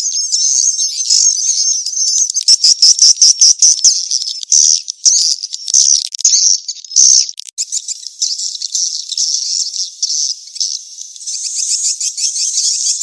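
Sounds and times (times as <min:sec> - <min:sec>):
swiftlet chirps and twittering: 0:05.4 - 0:13.0.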